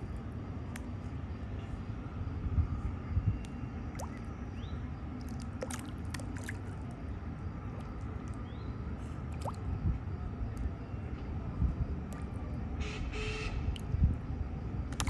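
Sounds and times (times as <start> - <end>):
low steady rumble: 0.0 - 15.0
fish splashing at water surface: 5.2 - 6.8.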